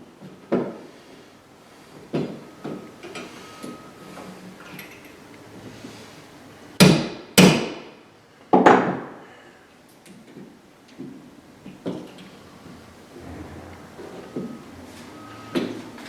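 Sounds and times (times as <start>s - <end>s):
hammer blows ringing: 13.2s - 16.0s.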